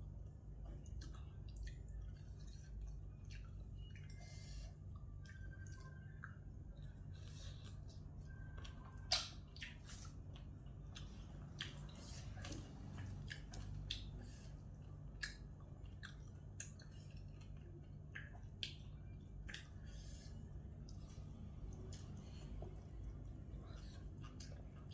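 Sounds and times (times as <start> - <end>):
steady low hum: 0.0 - 24.9
wet chewing and mouth clicks: 0.6 - 24.9.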